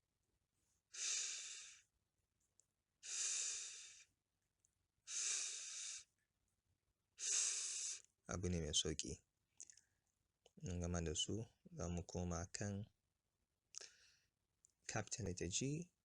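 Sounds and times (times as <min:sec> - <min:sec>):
man making voiceless fff hiss: 0:07.2 - 0:08.0.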